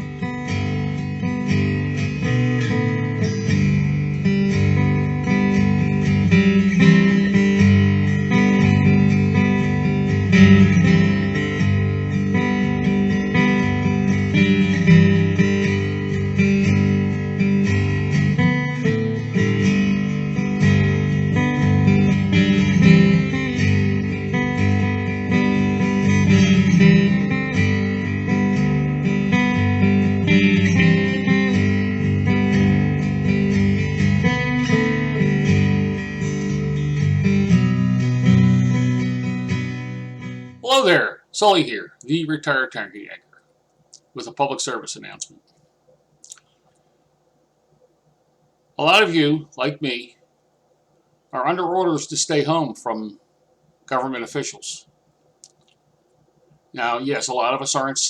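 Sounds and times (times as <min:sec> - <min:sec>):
acoustic guitar strummed and picked: 0:00.0 - 0:41.8.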